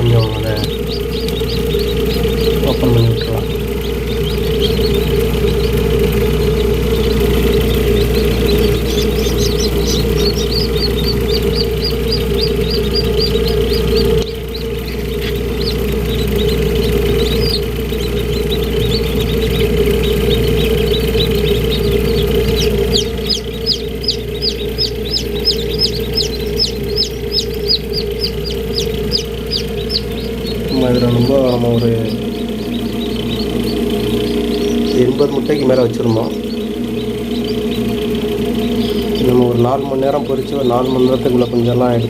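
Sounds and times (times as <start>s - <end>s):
chicks peeping: 0.0s - 42.0s
incubator hum: 0.0s - 42.0s.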